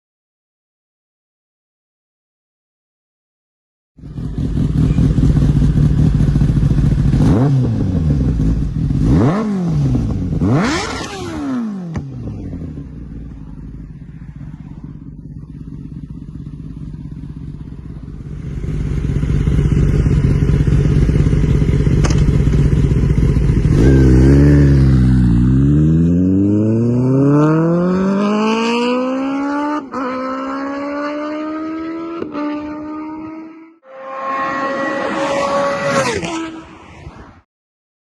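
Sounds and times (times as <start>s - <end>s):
motorcycle passing and accelerating: 4.0s - 37.4s.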